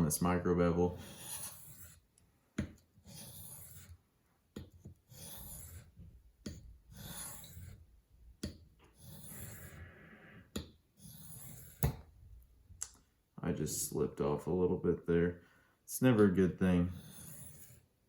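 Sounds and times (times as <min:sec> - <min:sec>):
knife rasping on sharpening stone: 0:00.9 - 0:02.1, 0:03.0 - 0:04.0, 0:04.8 - 0:07.9, 0:08.9 - 0:10.0, 0:10.6 - 0:12.0, 0:16.9 - 0:17.9.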